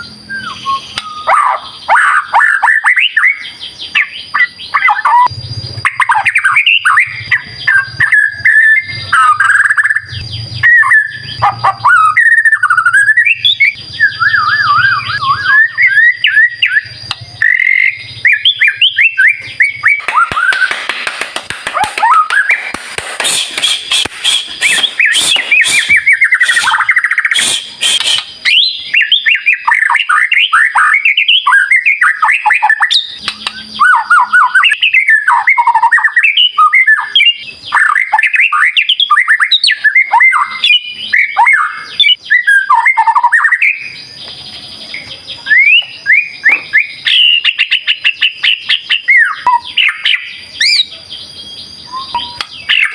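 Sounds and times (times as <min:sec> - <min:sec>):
bird singing whistles and trills: 0:00.0 - 0:20.9, 0:21.8 - 0:52.9
bird rasping chatter: 0:16.1 - 0:28.9.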